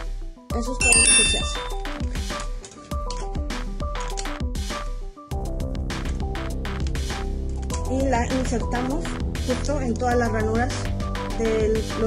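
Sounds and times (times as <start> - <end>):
melody over drum beat: 0.8 - 2.1.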